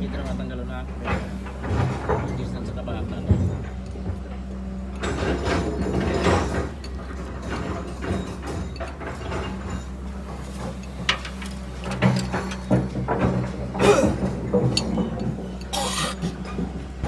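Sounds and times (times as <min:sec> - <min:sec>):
hand tools clicking on metal: 0:13.8 - 0:16.5.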